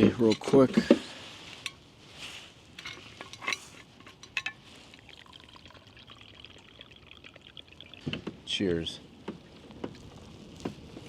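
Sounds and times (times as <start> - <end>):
coffee pouring into cup: 4.8 - 8.2.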